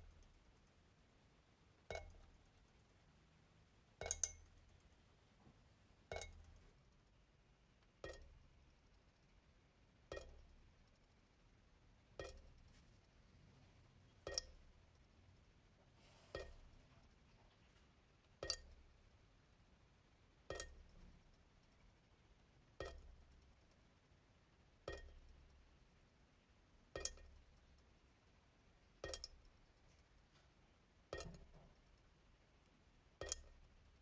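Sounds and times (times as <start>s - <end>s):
faucet dripping into sink: 1.8s - 2.7s, 4.0s - 4.9s, 6.0s - 6.7s, 8.0s - 8.4s, 10.1s - 10.6s, 12.1s - 12.7s, 14.1s - 14.8s, 16.3s - 17.1s, 18.4s - 18.9s, 20.4s - 21.4s, 22.8s - 23.5s, 24.8s - 25.6s, 26.9s - 27.7s, 28.9s - 29.6s, 31.1s - 32.0s, 33.2s - 33.7s.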